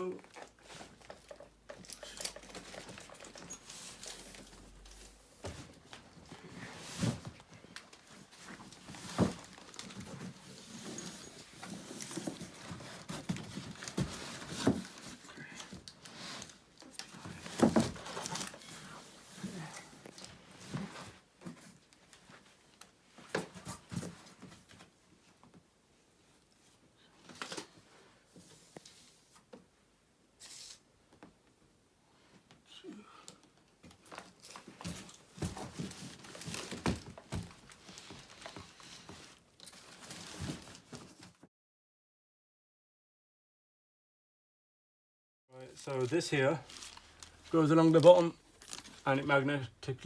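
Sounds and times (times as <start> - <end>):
handling clicks and rustles: 0.3 - 6.2.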